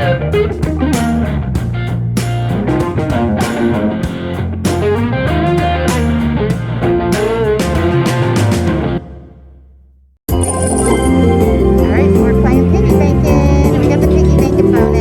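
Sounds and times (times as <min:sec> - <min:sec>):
rock music with guitar and drums: 0:00.0 - 0:09.3.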